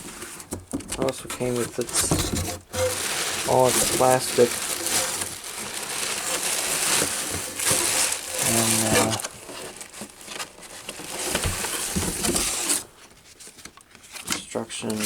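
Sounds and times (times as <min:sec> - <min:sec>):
plastic bag crinkling: 0:01.0 - 0:13.0.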